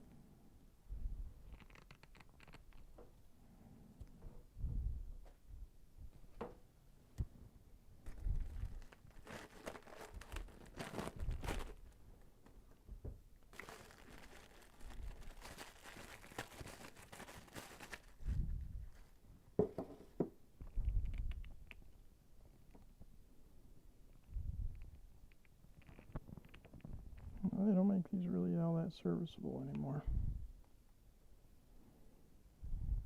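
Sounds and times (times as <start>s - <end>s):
plastic packaging crinkling: 1.5s - 3.0s, 8.0s - 12.7s, 13.4s - 19.2s, 24.7s - 27.4s.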